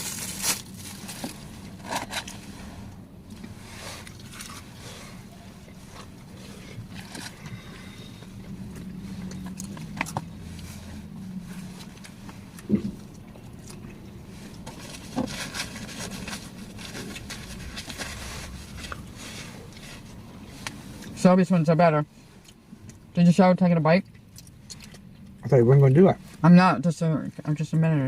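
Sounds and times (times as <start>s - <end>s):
rustling and handling noises: 0.0s - 21.2s
vehicle cabin hum: 0.0s - 28.0s.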